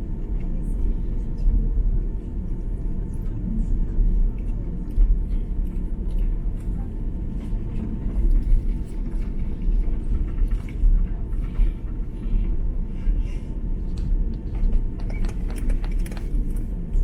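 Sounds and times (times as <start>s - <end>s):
airplane cabin rumble: 0.0s - 17.0s
light ticks and rattles: 13.9s - 16.7s.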